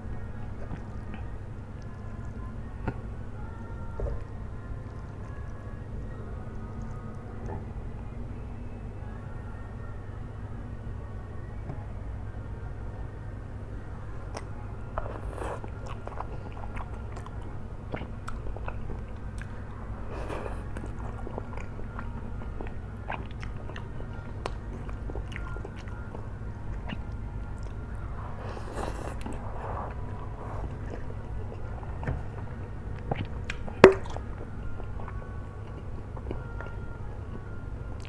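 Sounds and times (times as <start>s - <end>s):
steady low hum: 0.0s - 38.0s
person chewing: 14.2s - 38.0s.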